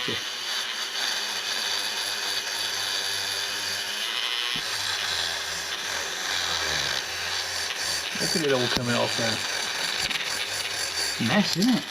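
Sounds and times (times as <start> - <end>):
power tool scouring metal: 0.0 - 11.9.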